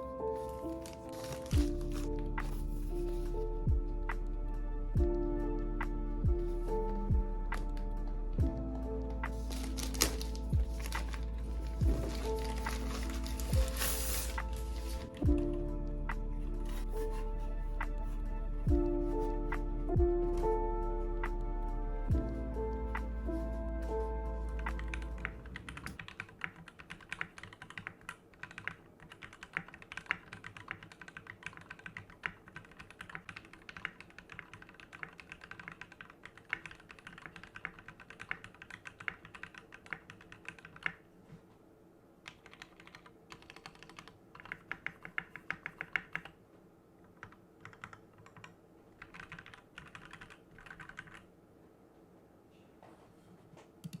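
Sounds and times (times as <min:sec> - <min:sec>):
typing on mechanical keyboard: 0:24.7 - 0:41.1, 0:42.2 - 0:46.4, 0:47.0 - 0:51.3.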